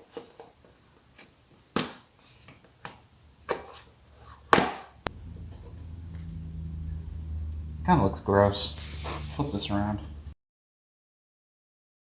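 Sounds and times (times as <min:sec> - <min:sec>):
low steady hum: 0:02.6 - 0:10.4.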